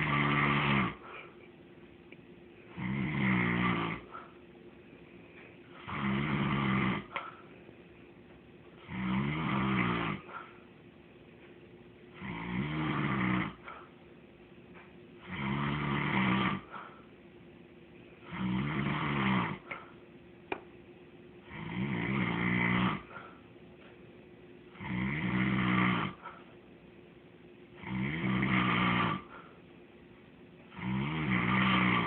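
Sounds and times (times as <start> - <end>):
person snoring: 0.0 - 1.4, 2.7 - 4.4, 5.8 - 7.4, 8.8 - 10.5, 12.1 - 13.9, 15.2 - 17.0, 18.2 - 20.0, 21.4 - 23.4, 24.8 - 26.4, 27.8 - 29.6, 30.7 - 32.0.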